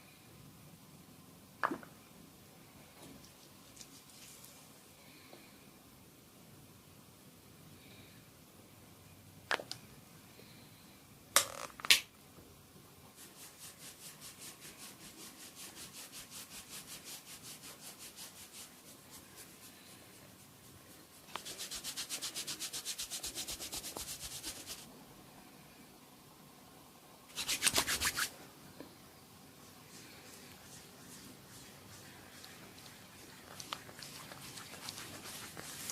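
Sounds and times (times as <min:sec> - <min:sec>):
fingers scratching a scalp: 0:13.2 - 0:19.7, 0:20.6 - 0:24.8, 0:27.3 - 0:28.3, 0:29.9 - 0:35.9.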